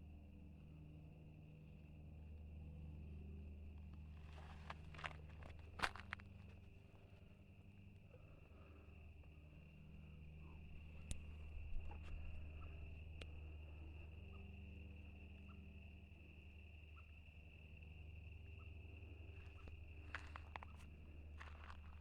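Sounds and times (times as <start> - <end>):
crickets trilling: 0.0 - 22.0
low hum: 0.0 - 22.0
light clicks and crunches: 3.9 - 6.7, 19.4 - 22.0.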